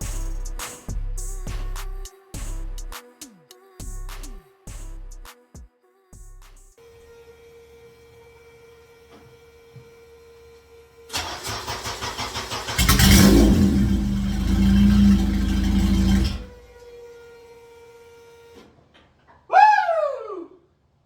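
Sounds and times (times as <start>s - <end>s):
car engine cranking and running: 11.1s - 16.6s.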